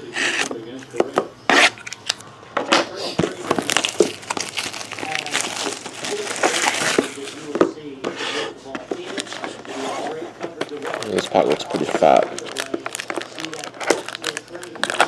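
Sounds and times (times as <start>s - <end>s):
plastic wrapping crinkling and tearing: 3.2s - 7.5s, 9.0s - 15.0s.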